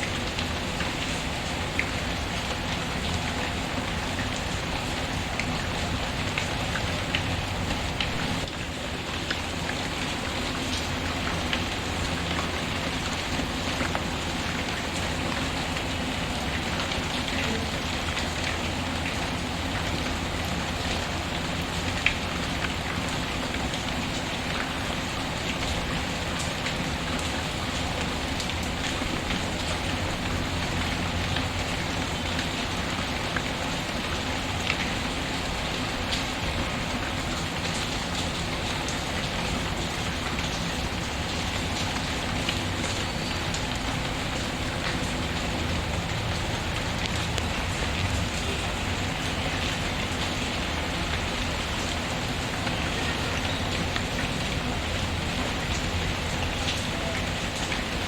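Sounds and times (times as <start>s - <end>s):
rain hissing: 0.0s - 58.0s.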